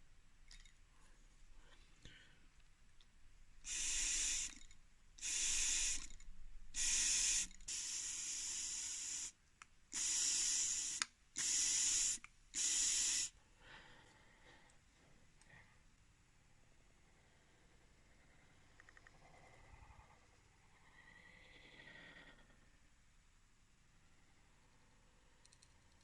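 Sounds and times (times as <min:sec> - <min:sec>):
hissing spray bursts: 0:03.7 - 0:04.6, 0:05.2 - 0:06.1, 0:06.8 - 0:09.4, 0:10.0 - 0:13.4.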